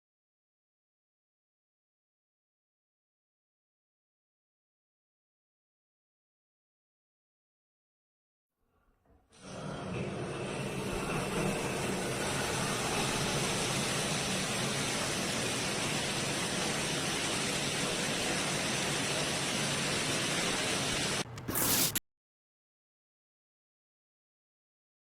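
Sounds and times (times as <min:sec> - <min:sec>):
shower water spraying: 0:10.2 - 0:22.0.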